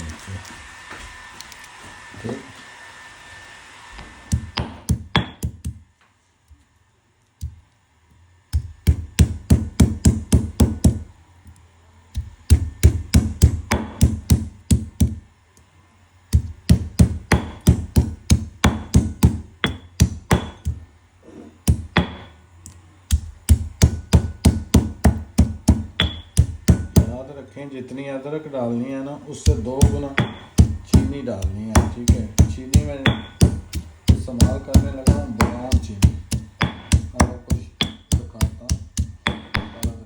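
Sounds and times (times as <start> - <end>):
rapid hard knocks on ginger: 4.3 - 5.9, 8.5 - 11.1, 12.2 - 15.3, 16.3 - 20.9, 21.6 - 22.3, 23.1 - 27.2, 29.4 - 40.0.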